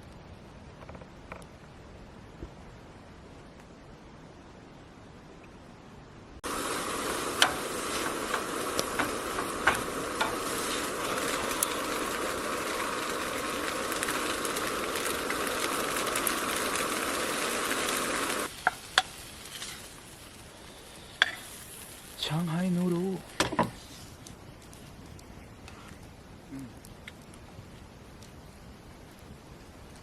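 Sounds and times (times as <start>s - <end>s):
food sizzling in a pan: 6.4s - 24.2s.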